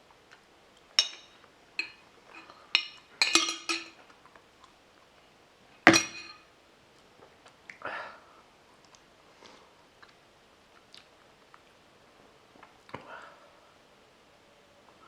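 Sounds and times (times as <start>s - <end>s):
glass and cutlery clinking: 1.0s - 4.0s, 5.9s - 6.4s.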